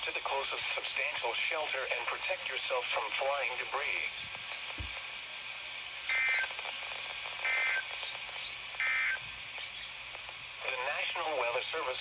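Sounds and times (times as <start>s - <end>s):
radio receiver hiss: 0.0s - 12.0s
two-tone digital data bursts: 6.1s - 8.1s, 8.8s - 9.2s.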